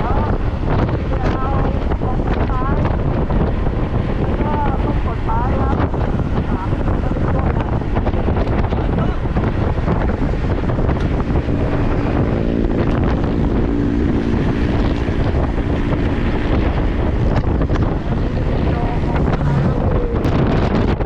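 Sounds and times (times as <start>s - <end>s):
steady droning tone: 0.0s - 21.0s
wind buffeting microphone: 0.0s - 21.0s.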